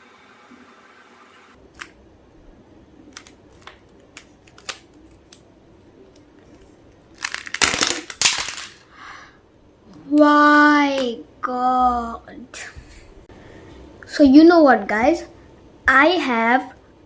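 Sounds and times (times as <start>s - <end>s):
plastic pieces rattling clatter: 7.1s - 8.8s.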